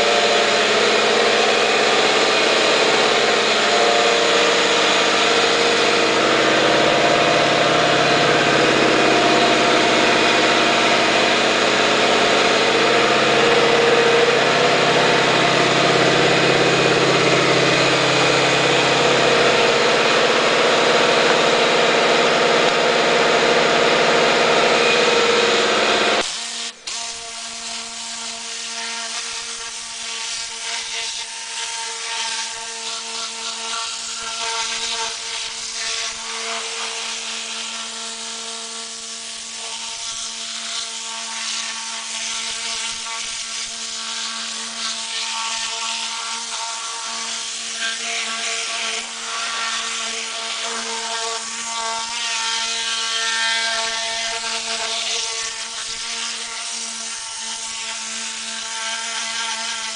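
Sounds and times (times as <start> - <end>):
compressed air gun blasting: 0.0 - 30.4
droning hum: 0.0 - 59.9.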